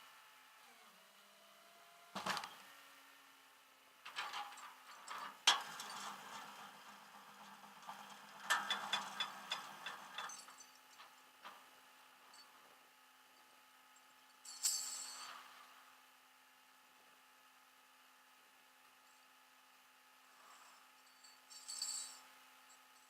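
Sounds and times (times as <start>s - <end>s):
faint hum: 9.0s - 23.0s.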